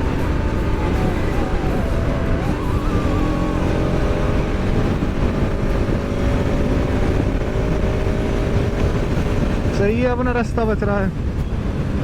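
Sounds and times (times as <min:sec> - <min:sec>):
motorcycle engine running: 0:00.0 - 0:12.0
wind rumbling on microphone: 0:00.0 - 0:12.0.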